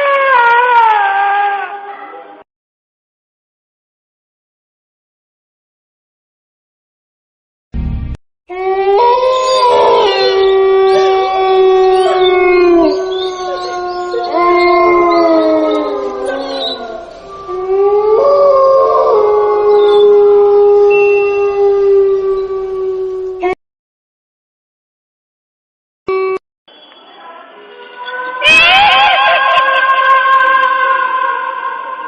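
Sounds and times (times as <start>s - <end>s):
wolves howling in chorus: 8.8s - 23.6s.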